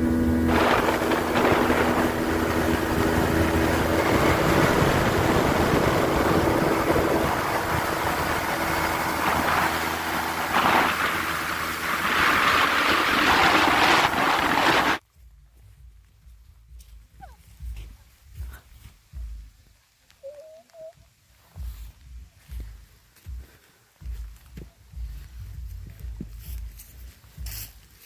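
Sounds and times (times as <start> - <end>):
heavy rushing noise: 0.0 - 15.0
engine humming: 0.0 - 28.0.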